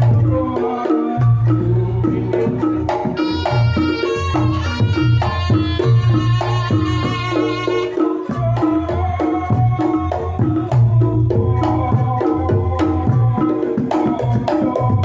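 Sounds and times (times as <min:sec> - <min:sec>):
pitched metallophone notes: 0:00.0 - 0:15.0
shawm melody: 0:00.0 - 0:15.0
kendang drums: 0:01.2 - 0:08.9.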